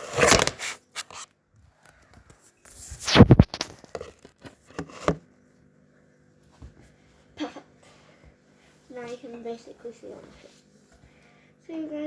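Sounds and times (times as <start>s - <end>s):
handling noise on microphone: 2.4s - 5.2s.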